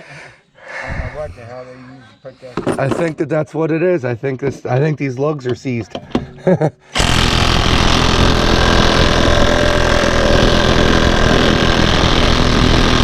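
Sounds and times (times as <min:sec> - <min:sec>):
impact wrench rattling: 0:07.0 - 0:13.0.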